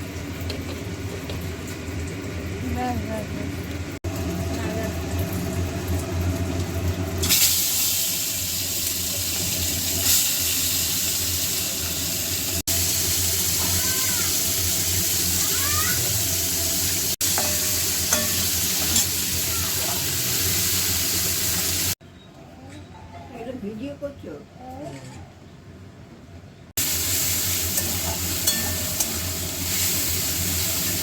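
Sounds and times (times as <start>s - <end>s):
prawns sizzling in hot oil: 3.8s - 22.0s, 26.8s - 31.0s.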